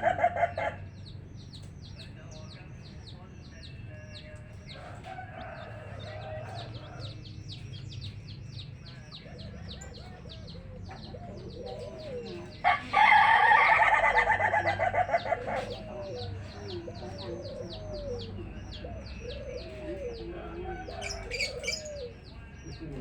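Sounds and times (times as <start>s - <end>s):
baby chicks peeping: 0.0s - 23.0s
hen clucking: 4.4s - 23.0s
rooster crowing: 4.7s - 7.4s, 11.6s - 16.8s, 17.5s - 22.2s.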